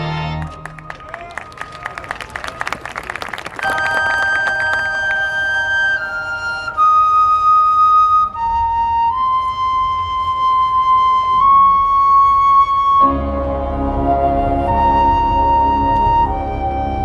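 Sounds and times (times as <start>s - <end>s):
slow flute-like solo melody: 3.6s - 17.0s.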